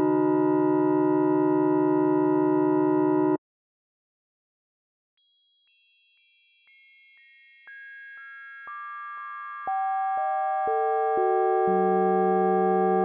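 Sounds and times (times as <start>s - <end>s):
synthesized bell tones: 0.0s - 3.4s, 9.6s - 13.0s.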